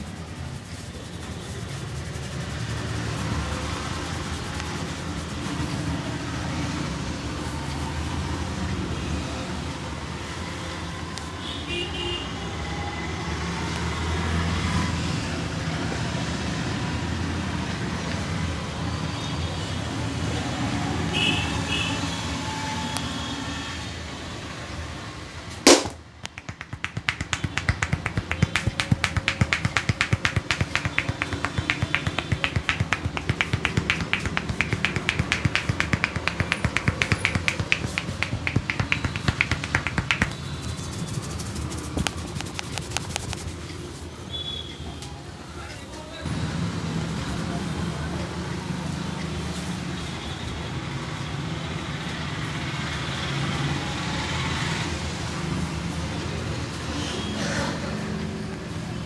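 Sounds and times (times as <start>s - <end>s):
sharp click: 25.7s - 43.5s
hand taps of head massage: 25.7s - 43.6s.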